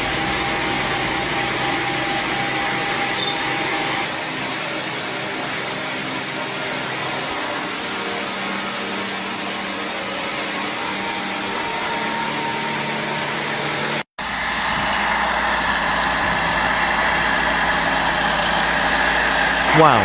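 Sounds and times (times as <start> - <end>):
harsh diesel engine running: 0.0 - 20.0
machinery engine humming: 0.0 - 20.0.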